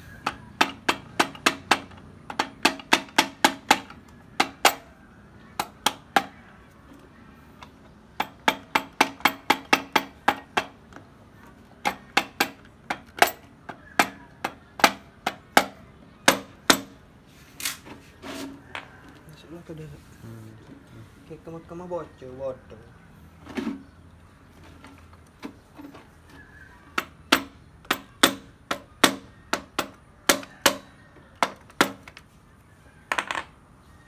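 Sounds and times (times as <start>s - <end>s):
hammer tapping on metal: 0.2s - 4.9s, 8.2s - 10.8s, 27.0s - 30.8s.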